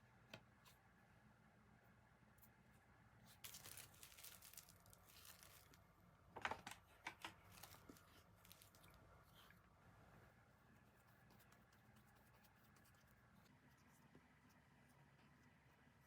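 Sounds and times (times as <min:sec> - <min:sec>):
hands rustling and crinkling: 0:03.2 - 0:05.8, 0:07.2 - 0:09.6.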